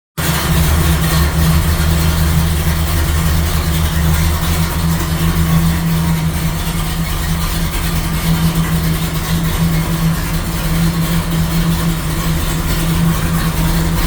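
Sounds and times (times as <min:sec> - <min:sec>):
car engine idling: 0:00.2 - 0:14.0.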